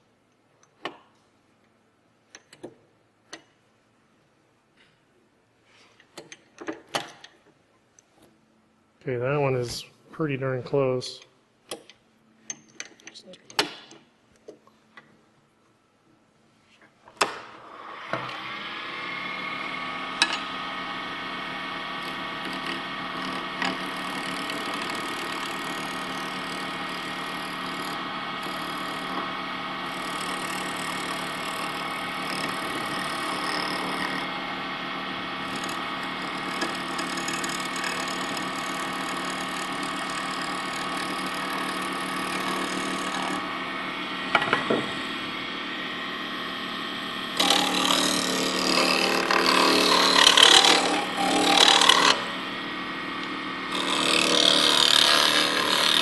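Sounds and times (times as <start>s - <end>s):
wood lathe running: 17.8s - 56.0s
gouge cutting spinning wood: 18.3s - 56.0s.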